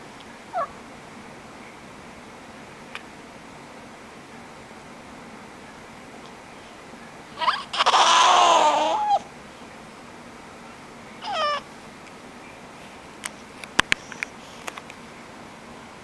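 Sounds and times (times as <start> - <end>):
baby making high squeaky noises: 0.5 - 0.7, 7.4 - 9.2, 11.2 - 11.6
small sharp clicks: 13.2 - 15.0.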